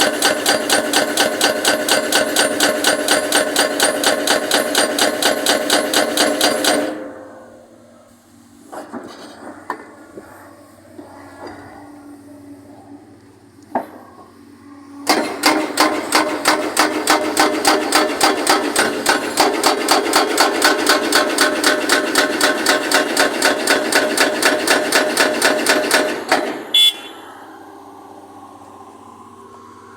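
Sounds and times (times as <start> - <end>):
hydraulic breaker hammering: 0.0 - 7.2, 15.0 - 26.9
engine drone: 0.0 - 29.9.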